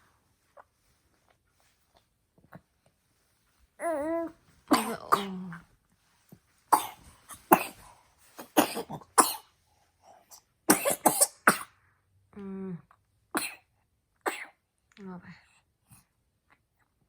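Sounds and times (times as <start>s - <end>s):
person coughing harshly: 8.4s - 9.5s, 10.7s - 11.7s.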